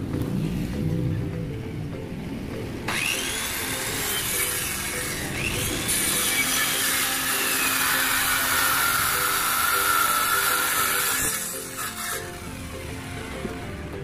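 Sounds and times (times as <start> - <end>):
background music: 0.0 - 14.0
power tool grinding: 2.9 - 13.1.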